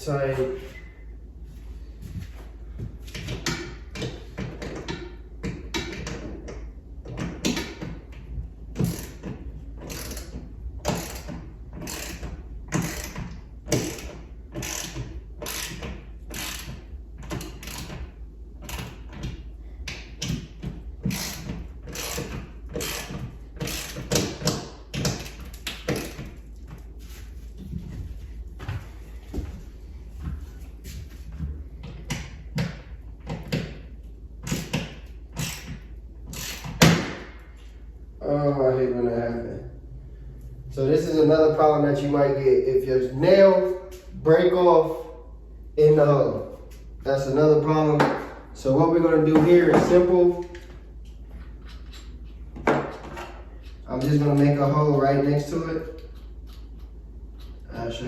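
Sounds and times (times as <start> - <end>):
ratchet wrench clicking: 8.8 - 16.8, 17.4 - 18.0, 21.1 - 26.2, 34.4 - 36.8.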